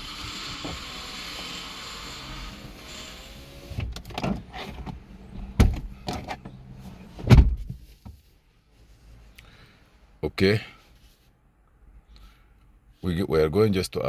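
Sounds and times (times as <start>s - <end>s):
knocks and thumps from handling: 3.8s - 6.6s, 7.2s - 8.2s.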